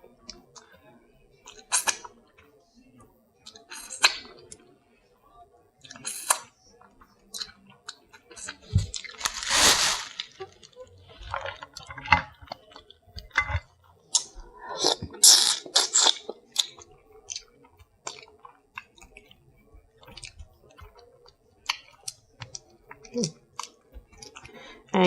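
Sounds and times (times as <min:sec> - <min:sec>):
chewing and wet mouth smacking: 0:14.1 - 0:19.3, 0:20.0 - 0:24.6.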